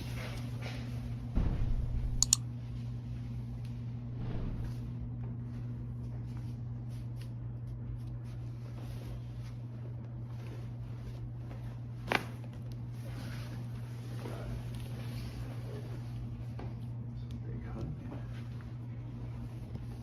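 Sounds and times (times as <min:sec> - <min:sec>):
steady low hum: 0:00.0 - 0:20.0
joint popping crack: 0:02.2 - 0:02.4.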